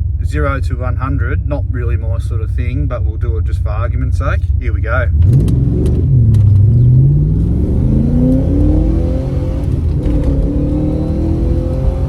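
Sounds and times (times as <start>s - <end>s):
car engine accelerating: 5.1s - 12.0s.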